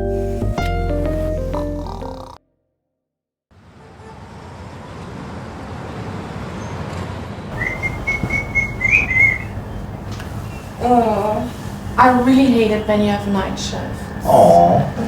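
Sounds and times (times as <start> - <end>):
high wavering whistle: 7.5 - 9.8
low rumbling: 7.5 - 10.1.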